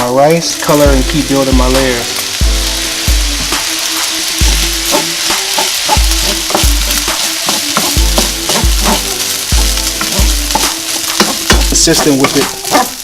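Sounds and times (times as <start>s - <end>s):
deep bass music beat: 0.0s - 13.0s
rice sizzling in a pan: 0.1s - 13.0s
spatula clicking and scraping: 4.9s - 13.0s.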